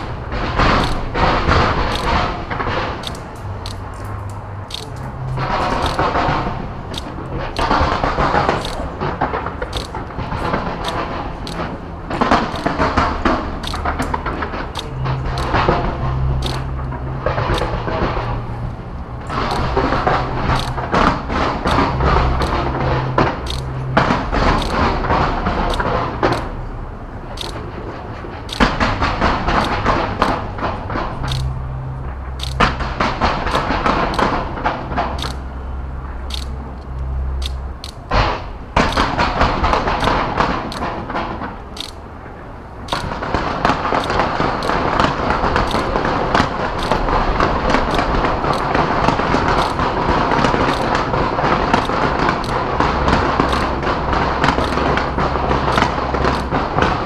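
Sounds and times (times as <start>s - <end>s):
fireworks crackling: 42.9s - 57.0s.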